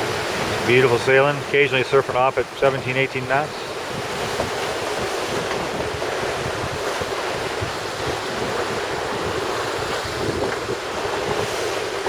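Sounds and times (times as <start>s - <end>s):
sea water rushing past hull: 0.0s - 12.0s
wind buffeting microphone: 3.3s - 12.0s.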